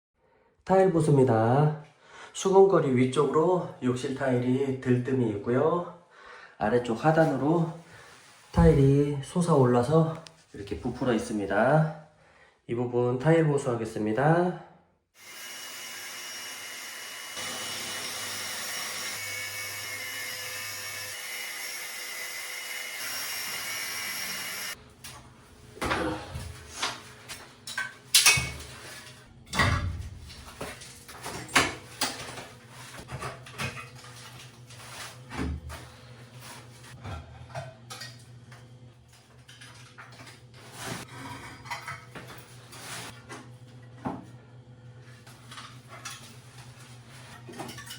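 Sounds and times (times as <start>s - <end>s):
power tool running: 15.2s - 24.8s.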